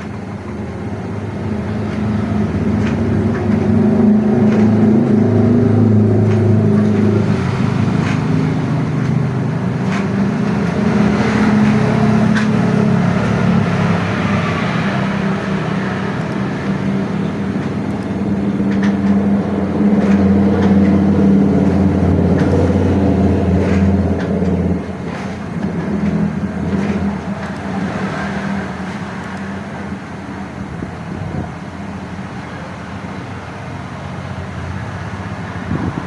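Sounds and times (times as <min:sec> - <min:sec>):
vehicle engine running: 0:00.0 - 0:32.4.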